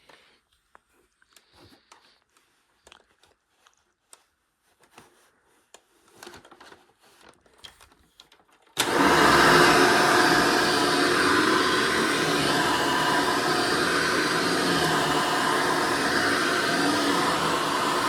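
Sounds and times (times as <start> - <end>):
vacuum cleaner running: 8.8 - 18.0.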